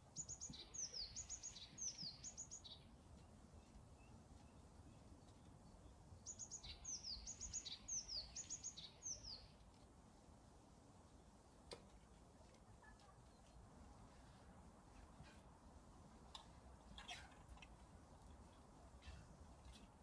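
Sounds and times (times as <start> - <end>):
small songbird singing: 0.0 - 9.6.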